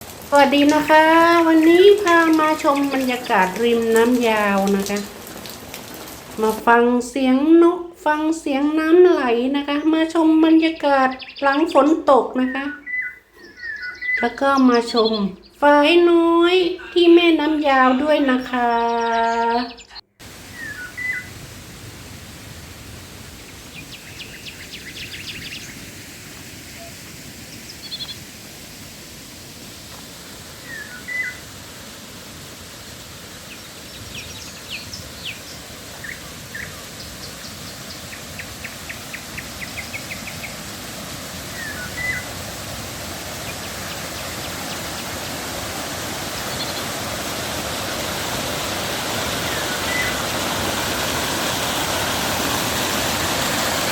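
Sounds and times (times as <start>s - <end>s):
bird chirping: 9.8s - 15.7s, 16.4s - 21.3s, 23.4s - 25.8s, 26.8s - 28.2s, 30.6s - 31.4s, 33.5s - 40.5s, 41.5s - 42.3s, 49.4s - 50.2s
river water rushing: 20.2s - 53.9s.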